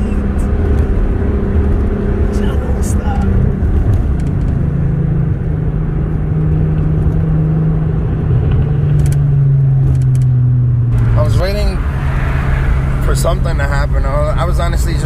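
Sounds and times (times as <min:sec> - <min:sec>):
car engine driving: 0:00.0 - 0:15.0
road noise: 0:00.0 - 0:15.0.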